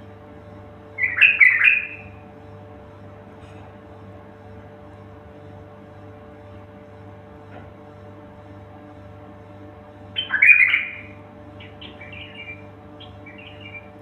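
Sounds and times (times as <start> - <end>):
steady low hum: 0.0 - 14.0
songbird chirping: 1.0 - 2.1, 10.2 - 14.0.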